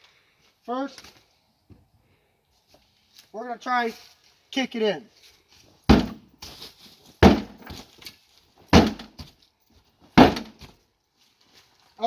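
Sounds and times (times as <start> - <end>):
heavy kicks against door: 5.9 - 6.2, 7.2 - 7.7, 8.7 - 9.2, 10.2 - 10.6.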